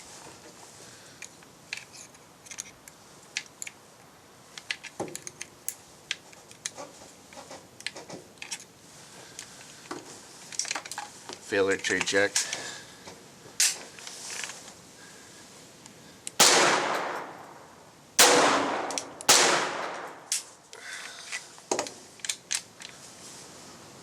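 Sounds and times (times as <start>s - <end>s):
pistol metallic clicks and rattles: 1.2s - 3.8s, 4.5s - 6.8s, 18.2s - 20.6s.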